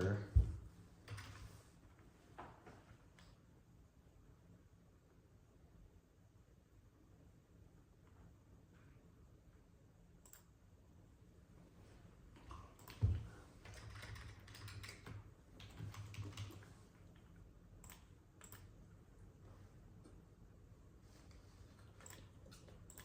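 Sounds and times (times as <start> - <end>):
computer keyboard typing: 1.0 - 1.4, 12.4 - 18.7, 21.8 - 23.0.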